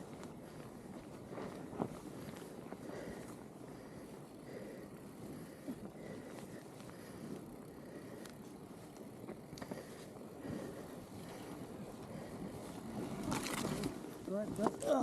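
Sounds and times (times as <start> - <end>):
bike tyres rolling through snow: 0.0 - 15.0
sharp clicks from bike: 5.7 - 10.2, 13.0 - 14.9.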